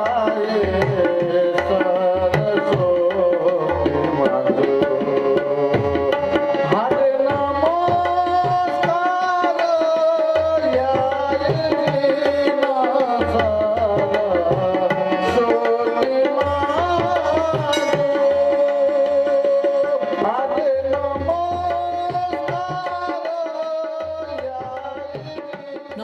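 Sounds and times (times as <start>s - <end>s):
devotional song melody: 0.0s - 26.0s
hand drum beat: 17.0s - 18.7s.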